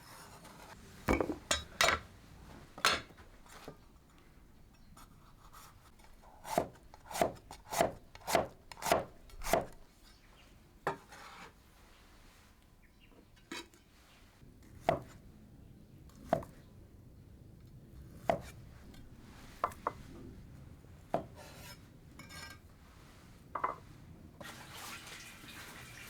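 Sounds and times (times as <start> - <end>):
knife knocking on wooden board: 1.1 - 2.0
running water: 24.4 - 26.0.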